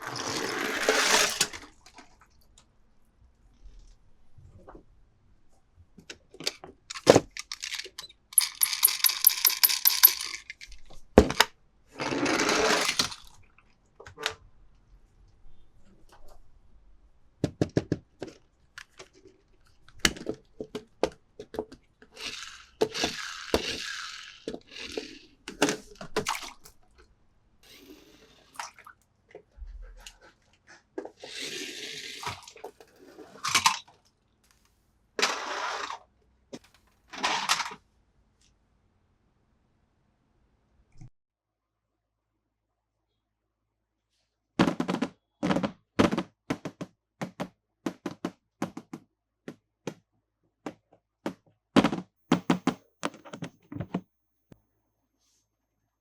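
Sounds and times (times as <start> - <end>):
toy cars clicking and tapping: 6.9 - 10.8, 22.1 - 25.6.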